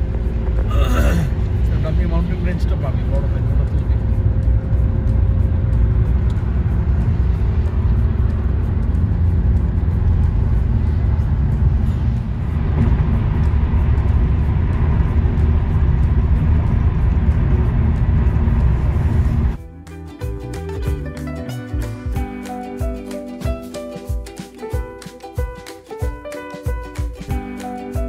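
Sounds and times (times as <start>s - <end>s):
car driving rumble from inside: 0.0s - 19.6s.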